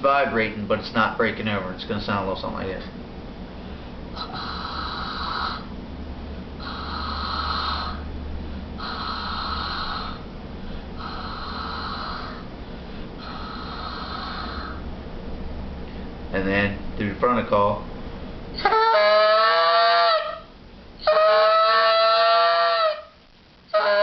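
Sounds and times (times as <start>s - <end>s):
goose call long notes: 4.2s - 5.7s, 6.6s - 8.1s, 8.8s - 10.2s, 18.6s - 24.0s.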